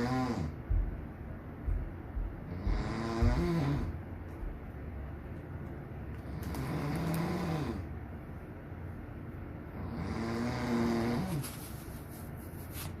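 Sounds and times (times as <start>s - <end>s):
man snoring: 0.0s - 0.6s, 2.5s - 4.0s, 6.3s - 7.9s, 9.8s - 11.4s.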